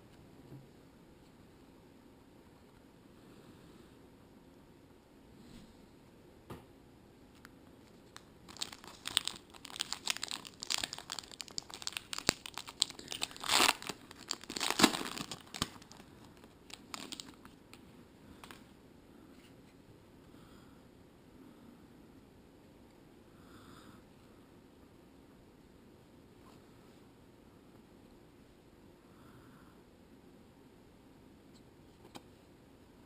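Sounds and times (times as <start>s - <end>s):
wrapper crinkling: 8.1s - 17.6s
wrapper tearing: 8.2s - 17.6s.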